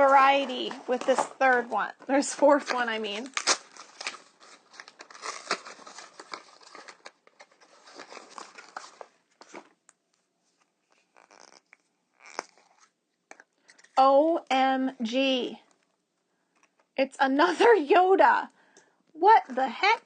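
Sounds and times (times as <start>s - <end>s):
wrapper crinkling and tearing: 2.6s - 9.7s, 10.9s - 12.9s.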